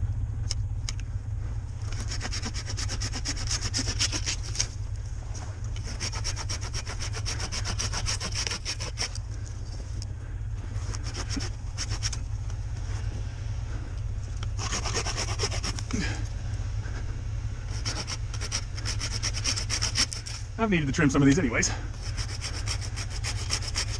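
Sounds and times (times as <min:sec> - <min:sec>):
hand saw cutting branches: 0:01.8 - 0:04.8, 0:05.7 - 0:09.2, 0:10.8 - 0:12.3, 0:14.5 - 0:16.2, 0:17.7 - 0:20.5, 0:21.2 - 0:23.9.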